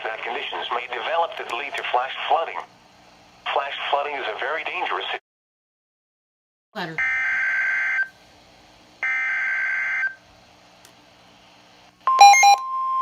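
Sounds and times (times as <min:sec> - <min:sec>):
short loud beeping burst: 0:12.1 - 0:12.6
single-pitch warning alarm tone: 0:12.1 - 0:13.0.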